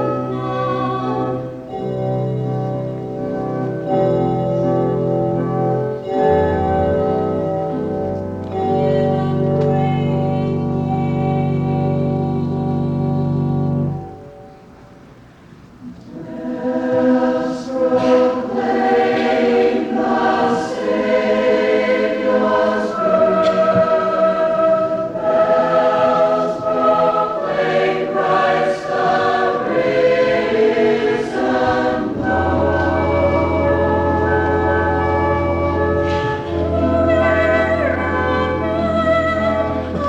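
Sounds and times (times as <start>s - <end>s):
choir singing in parts: 0.0s - 1.7s, 8.6s - 14.1s, 16.0s - 40.0s
held chord: 16.3s - 40.0s.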